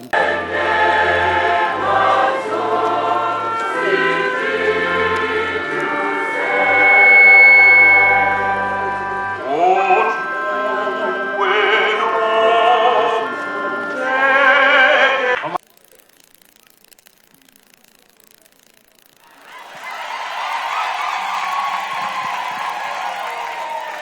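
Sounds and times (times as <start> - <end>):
choir singing: 0.1 - 15.6.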